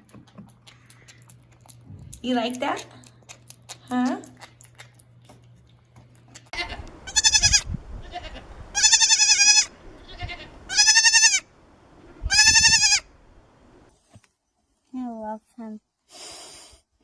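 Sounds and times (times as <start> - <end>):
young goat bleating: 6.5 - 11.5, 12.2 - 13.1.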